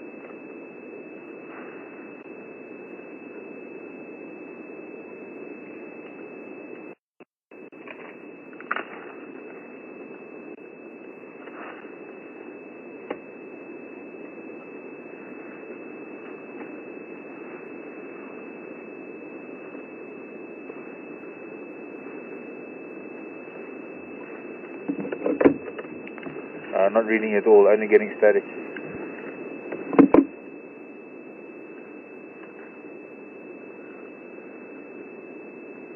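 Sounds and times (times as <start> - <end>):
radio static hiss: 0.0 - 35.9.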